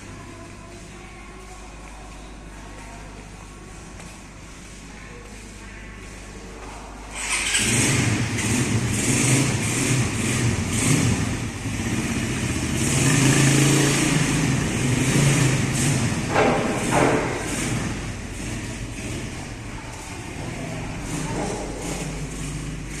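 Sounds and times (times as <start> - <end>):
vehicle engine starting and revving: 7.1 - 23.0.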